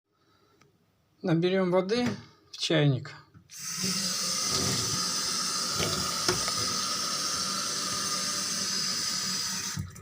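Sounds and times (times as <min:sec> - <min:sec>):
tap water filling kettle: 0:03.5 - 0:10.0.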